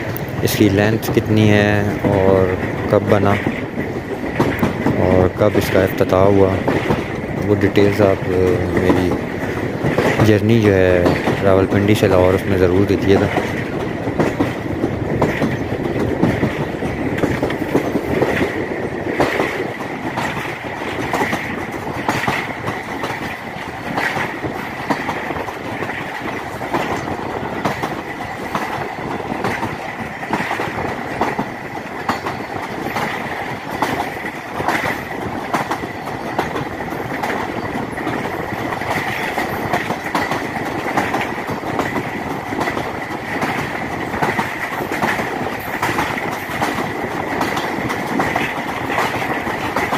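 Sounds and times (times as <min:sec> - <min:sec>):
high whine of wheels on rails: 0:00.0 - 0:49.9
train wheels clattering over rail joints: 0:00.0 - 0:49.9.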